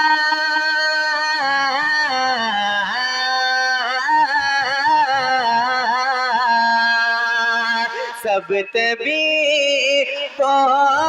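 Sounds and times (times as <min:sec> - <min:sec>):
man singing melismatic line: 0:07.3 - 0:11.0.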